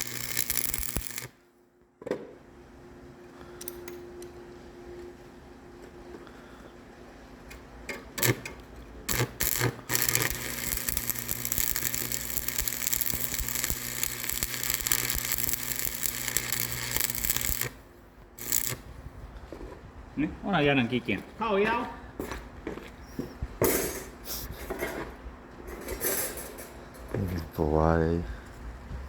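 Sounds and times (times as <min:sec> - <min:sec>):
small electric motor humming: 0:00.0 - 0:01.3, 0:09.1 - 0:17.7.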